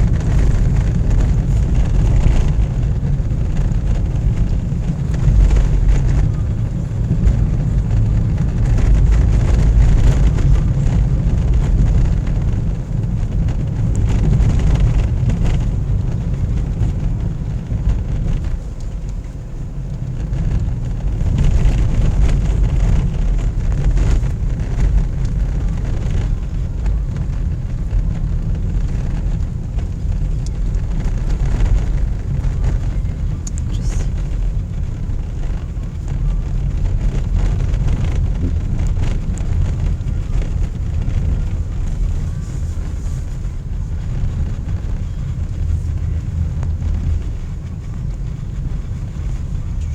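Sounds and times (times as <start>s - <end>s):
car engine and tyres rumbling: 0.0s - 49.9s.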